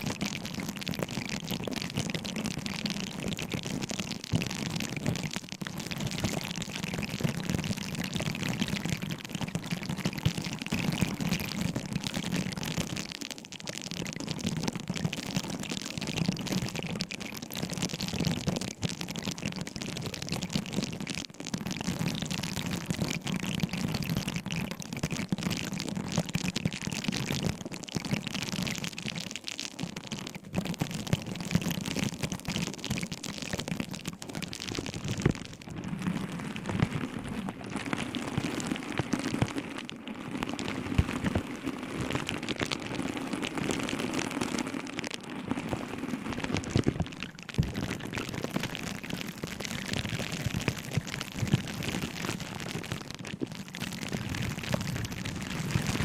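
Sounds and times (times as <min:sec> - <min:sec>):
objects crackling and tapping: 0:24.6 - 0:35.8, 0:36.7 - 0:45.9, 0:46.5 - 0:56.0.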